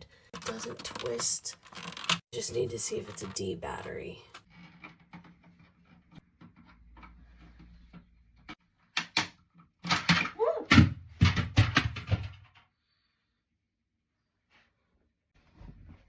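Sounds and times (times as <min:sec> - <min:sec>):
plastic clicks: 0:00.4 - 0:02.2
knocking and rattling: 0:00.4 - 0:02.3, 0:02.9 - 0:08.6, 0:09.5 - 0:12.6.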